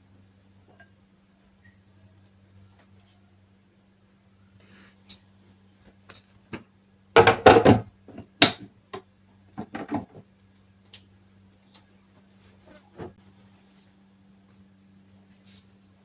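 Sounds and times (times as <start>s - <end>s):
faint steady hum: 0.0s - 16.0s
objects knocking and clattering: 7.2s - 8.7s, 9.6s - 10.3s.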